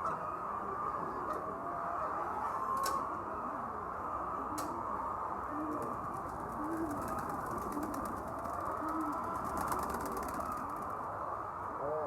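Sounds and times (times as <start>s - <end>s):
chickens calling: 4.2s - 11.1s.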